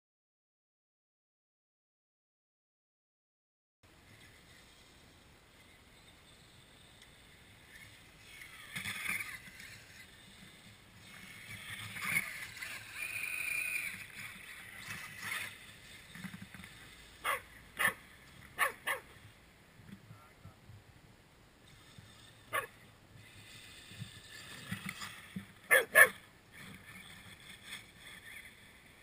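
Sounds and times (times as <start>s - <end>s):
electric motor whining: 7.7s - 17.4s
dog yipping: 17.2s - 18.0s, 18.6s - 19.1s, 22.5s - 22.7s, 25.7s - 26.2s.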